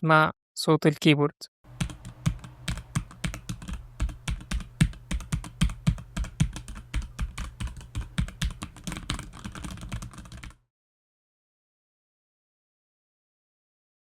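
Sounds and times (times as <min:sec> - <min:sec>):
mechanical keyboard typing: 0:01.7 - 0:10.6.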